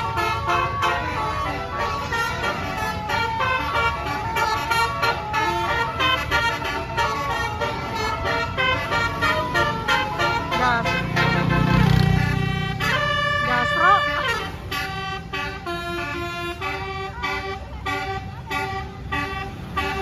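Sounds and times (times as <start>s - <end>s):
bus engine running: 0.0s - 20.0s
multi-tone bus horn tune: 0.0s - 20.0s.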